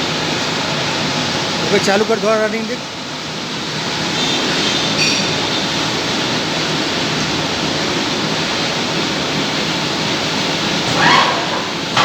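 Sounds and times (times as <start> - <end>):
high squeal: 10.9 - 12.0.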